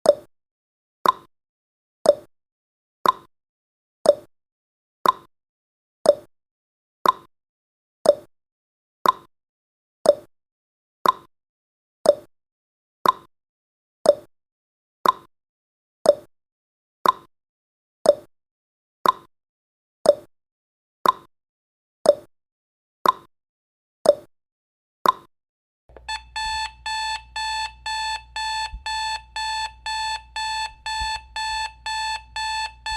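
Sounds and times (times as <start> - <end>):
clock ticking: 25.9 - 32.9
rapid electronic alarm beeping: 26.0 - 32.9.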